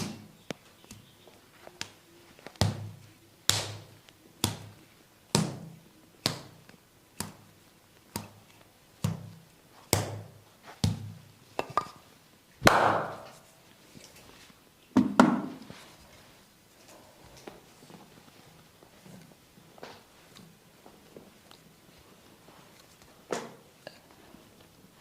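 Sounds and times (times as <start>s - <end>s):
percussive massage strikes on body: 2.6s - 7.5s, 9.0s - 11.2s, 12.6s - 13.3s.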